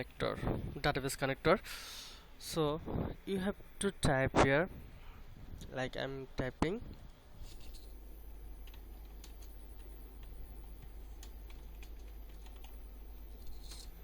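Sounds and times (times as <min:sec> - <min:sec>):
steady low hum: 0:00.0 - 0:14.0
keyboard typing clicks: 0:08.6 - 0:12.8.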